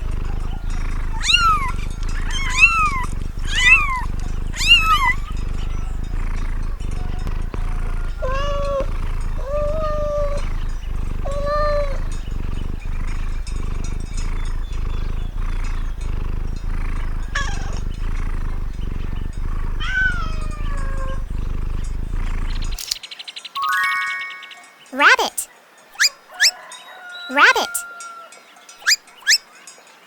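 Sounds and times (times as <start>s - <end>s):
cat meowing: 0.0s - 12.4s, 18.8s - 21.2s, 25.0s - 25.4s, 27.3s - 27.8s
low background hum: 0.0s - 22.9s.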